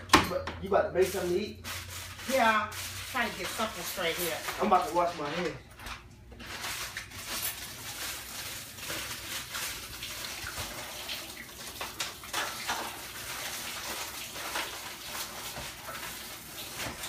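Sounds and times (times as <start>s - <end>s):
water running from a tap: 6.5s - 17.0s.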